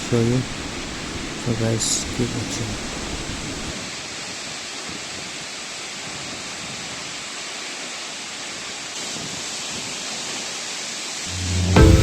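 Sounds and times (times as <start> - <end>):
waterfall rushing: 0.0 - 3.8.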